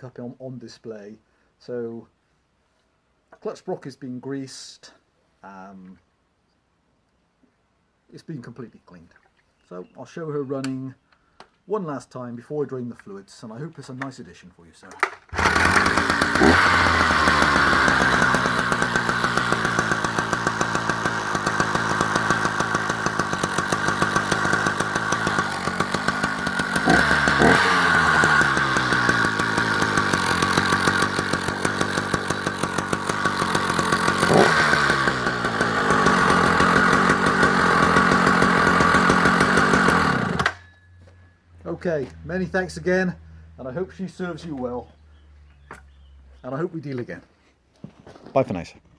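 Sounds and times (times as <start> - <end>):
chainsaw engine idling and revving: 15.0 - 40.7.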